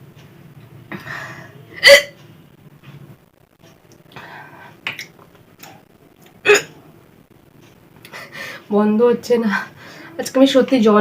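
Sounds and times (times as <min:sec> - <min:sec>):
person hiccuping: 0:01.8 - 0:02.2, 0:06.4 - 0:06.8
breathy breaths: 0:04.1 - 0:04.8, 0:08.0 - 0:08.7, 0:09.5 - 0:10.2.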